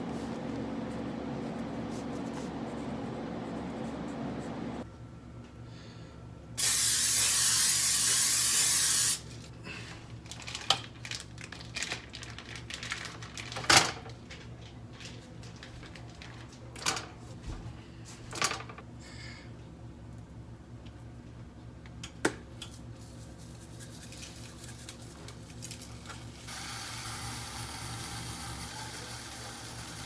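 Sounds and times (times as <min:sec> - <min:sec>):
loud steady hiss: 0:06.6 - 0:09.2.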